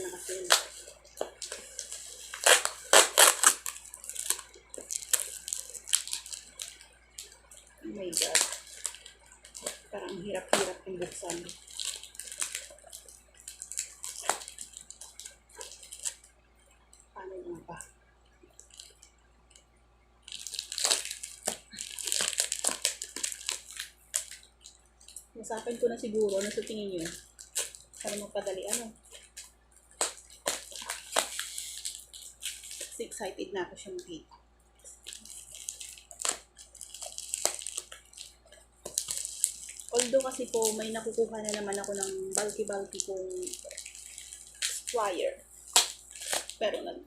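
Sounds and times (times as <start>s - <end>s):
packaging crinkling and tearing: 0.0s - 16.3s, 18.5s - 19.1s, 20.2s - 33.2s, 34.8s - 46.7s.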